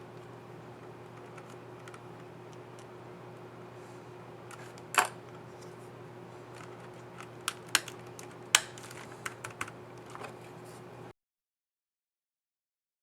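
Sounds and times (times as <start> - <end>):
steady low hum: 0.0 - 11.1
laptop keyboard keys clicking: 6.5 - 10.1.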